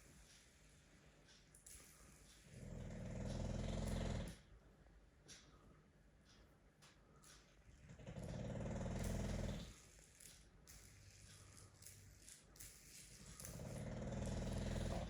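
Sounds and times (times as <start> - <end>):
dog snoring loudly: 2.7 - 4.4, 7.9 - 9.7, 13.6 - 15.0.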